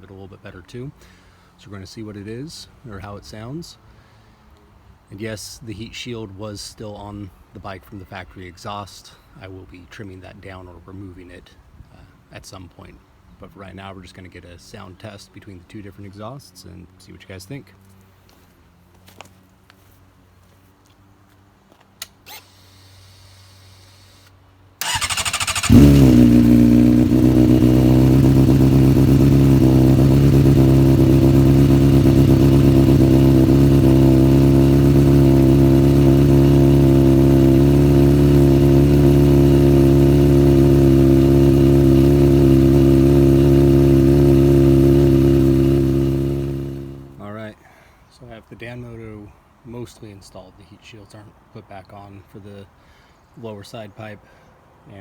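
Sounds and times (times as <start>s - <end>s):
motorcycle starter cranking: 24.8s - 36.3s
motorcycle engine idling: 24.8s - 47.2s.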